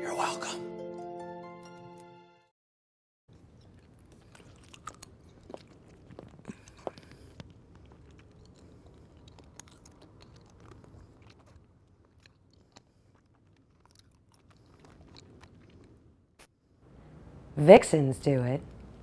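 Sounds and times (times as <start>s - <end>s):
chewing and crunching pistachios: 3.3s - 16.5s.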